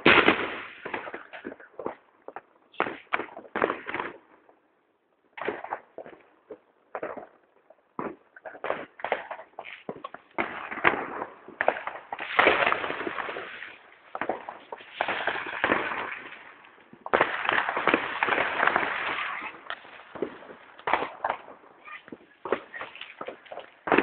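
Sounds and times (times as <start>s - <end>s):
fireworks crackling: 0.0s - 4.4s, 5.4s - 24.0s
fireworks popping: 0.0s - 4.6s, 5.3s - 24.0s.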